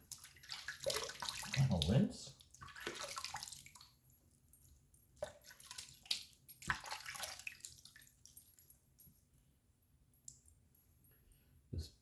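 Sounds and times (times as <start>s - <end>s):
water splashing: 0.0s - 4.0s, 5.2s - 8.1s.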